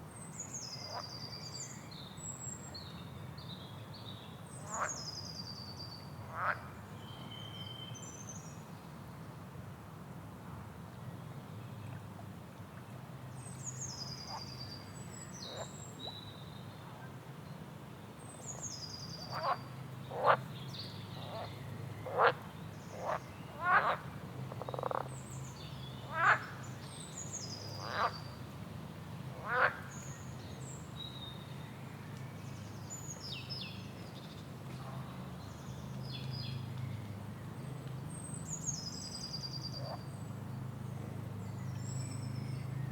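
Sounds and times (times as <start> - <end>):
frogs croaking: 6.3 - 6.7, 19.3 - 20.5, 21.2 - 25.1, 26.0 - 26.6, 27.8 - 28.2, 29.4 - 29.9.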